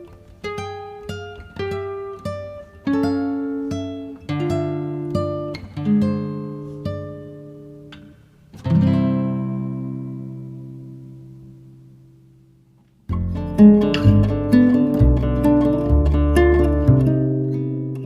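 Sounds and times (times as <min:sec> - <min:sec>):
acoustic guitar plucked notes: 0:00.0 - 0:18.0
guitar chord ringing: 0:13.1 - 0:18.0.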